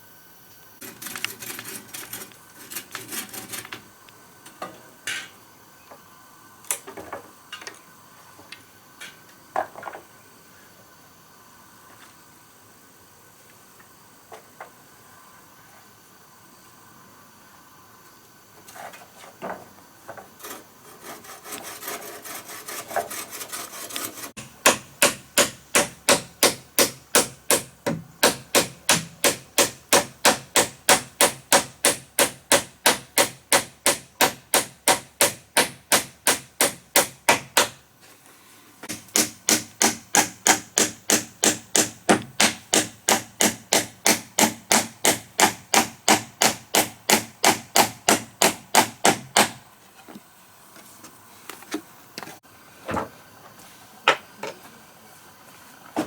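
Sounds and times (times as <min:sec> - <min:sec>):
hand tool working wood: 0:00.8 - 0:03.9, 0:20.1 - 0:32.0
scraping and knocks on wood: 0:00.8 - 0:03.9, 0:18.6 - 0:25.6.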